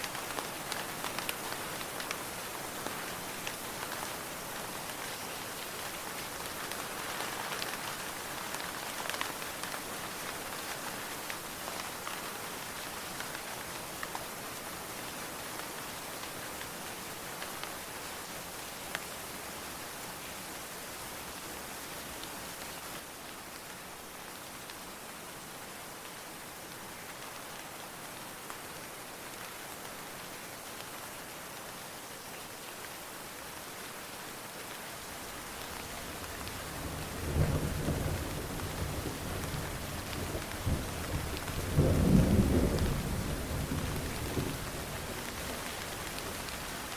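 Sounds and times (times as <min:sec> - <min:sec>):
heavy rain falling: 0:00.0 - 0:17.9, 0:32.9 - 0:46.9
thunder rumbling and crackling: 0:36.2 - 0:46.7.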